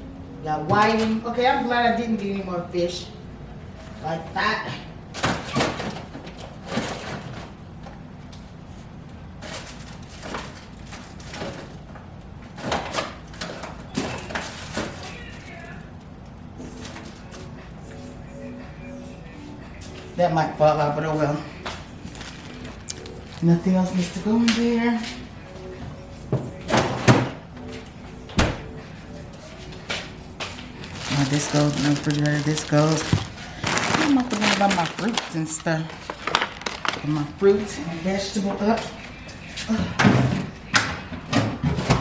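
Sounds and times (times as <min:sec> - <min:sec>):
frozen food packages clattering: 0:09.3 - 0:11.9, 0:12.5 - 0:15.8, 0:16.6 - 0:17.4, 0:21.8 - 0:25.2, 0:30.0 - 0:37.8
groceries knocking: 0:21.2 - 0:25.7, 0:28.4 - 0:37.6
refrigerator door shutting: 0:26.4 - 0:27.4, 0:28.3 - 0:28.8.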